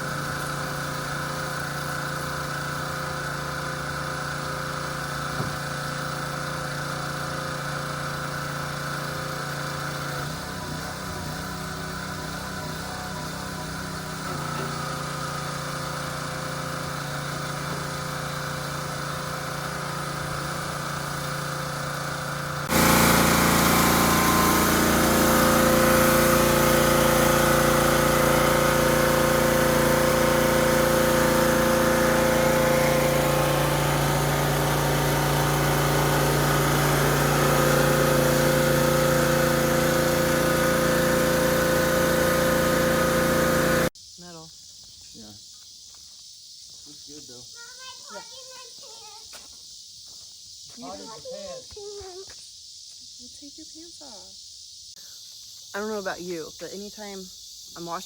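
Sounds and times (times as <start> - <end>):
small engine running: 0.0 - 44.0, 46.9 - 50.2, 50.8 - 52.4, 55.0 - 58.0.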